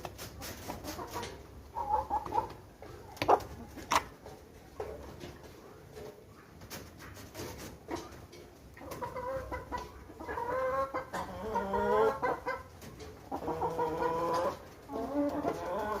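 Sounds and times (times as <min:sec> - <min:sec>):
chickens clucking: 0:00.0 - 0:16.0
chicken wavering calls: 0:00.4 - 0:04.0, 0:08.8 - 0:16.0.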